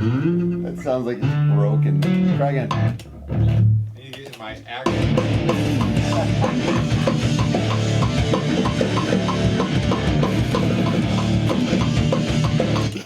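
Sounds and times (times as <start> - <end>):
heavy rock music: 4.8 - 13.0.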